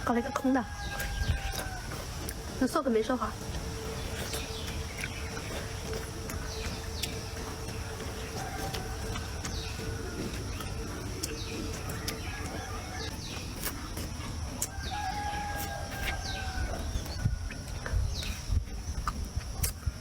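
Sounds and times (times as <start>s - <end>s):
rooster crowing: 0.0s - 2.4s, 7.7s - 13.3s, 14.6s - 17.4s
bird chirps: 3.2s - 14.2s.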